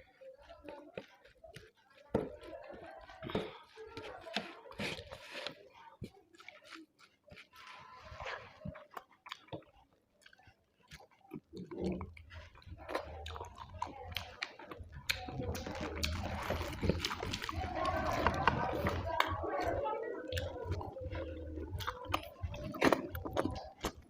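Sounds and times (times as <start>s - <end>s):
chewing food: 0.0s - 24.0s
wet mouth clicks and smacks: 8.7s - 17.6s, 20.3s - 24.0s.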